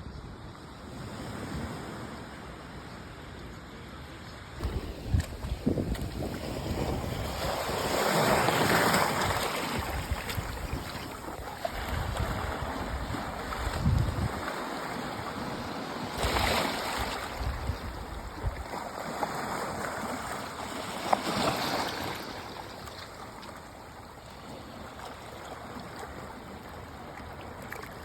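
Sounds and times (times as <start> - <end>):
small waves washing on shore: 0.8 - 28.0
wind buffeting microphone: 4.6 - 14.6, 16.2 - 18.7.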